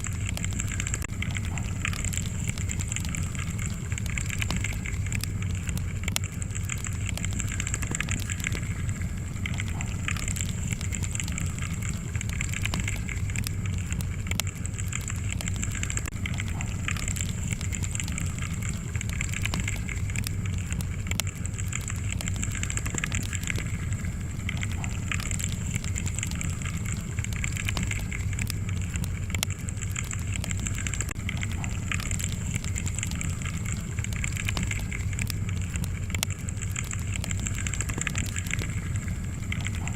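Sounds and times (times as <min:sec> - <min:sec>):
log fire crackling and popping: 0:00.0 - 0:39.9
low rumble: 0:00.0 - 0:39.9.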